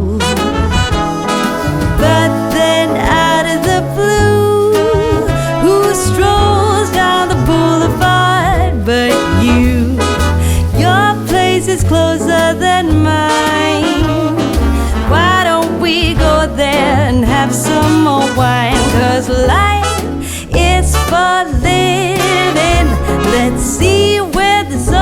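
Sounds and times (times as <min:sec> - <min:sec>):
upbeat song with pulsing bass: 0:00.0 - 0:25.0.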